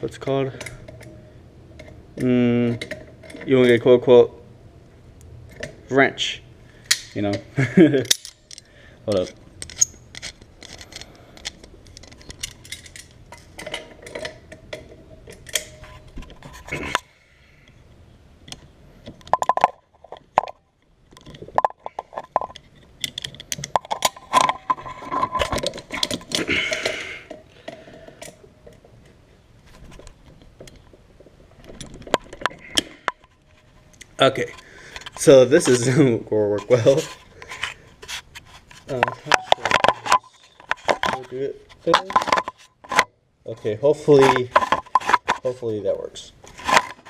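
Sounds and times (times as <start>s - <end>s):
metal hand tools clinking: 8.0s - 11.1s.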